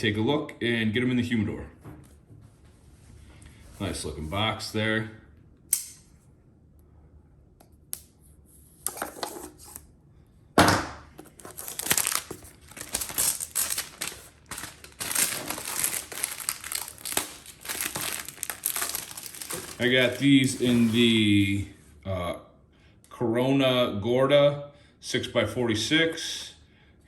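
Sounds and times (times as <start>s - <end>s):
packaging rustling: 11.2s - 21.2s
wrapping crinkling and crackling: 11.2s - 21.2s
loud packaging tear: 11.3s - 21.0s.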